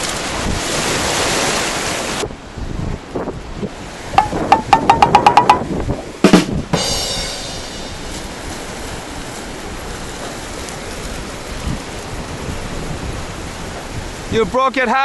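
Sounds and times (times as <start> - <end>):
wind noise: 0.0 - 14.5
surf: 0.0 - 15.0
drum roll: 4.2 - 8.6
cymbal crash: 6.8 - 8.2.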